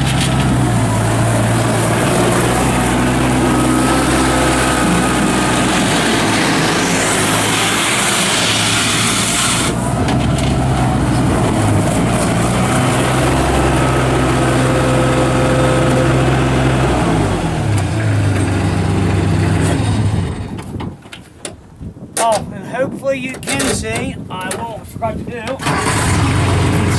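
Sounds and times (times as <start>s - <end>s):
diesel engine running: 0.0s - 20.6s, 25.6s - 26.9s.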